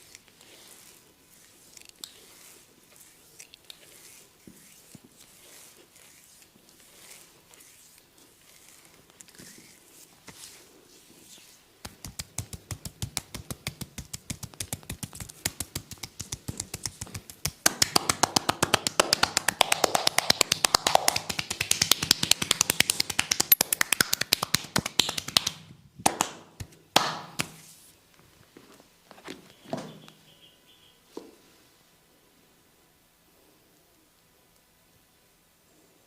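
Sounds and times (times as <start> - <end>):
rhythmic massage hand slaps: 11.8 - 27.6.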